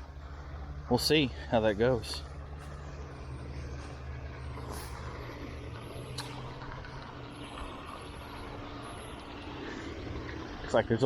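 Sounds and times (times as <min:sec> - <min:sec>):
low hum: 0:00.0 - 0:11.0.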